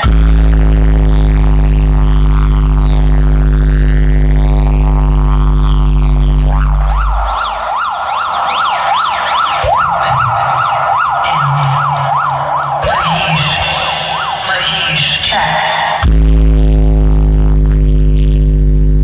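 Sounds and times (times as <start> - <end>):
deep bass drone: 0.0 - 14.7, 15.3 - 19.0
siren effect over loudspeakers: 5.6 - 16.2.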